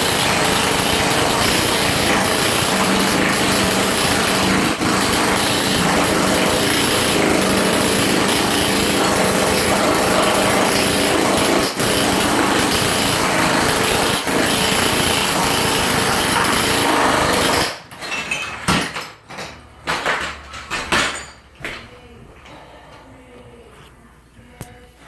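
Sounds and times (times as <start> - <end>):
tile vibrating tool buzzing: 0.0 - 17.8
knocks and handling sounds: 17.9 - 22.6.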